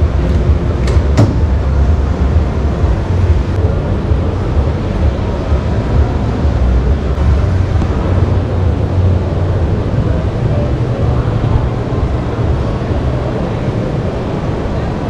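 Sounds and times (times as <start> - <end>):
loud low rumble: 0.0 - 15.0.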